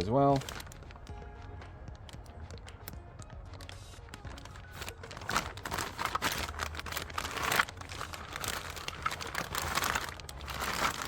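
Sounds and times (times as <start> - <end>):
plastic packaging crinkling: 0.0 - 1.1, 3.5 - 11.0.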